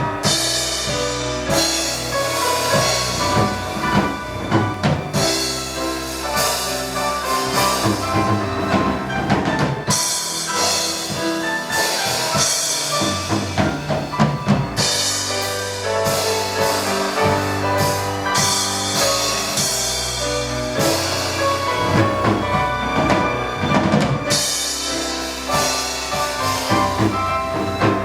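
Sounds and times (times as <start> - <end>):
drum and bass drum hits: 0.0 - 28.0.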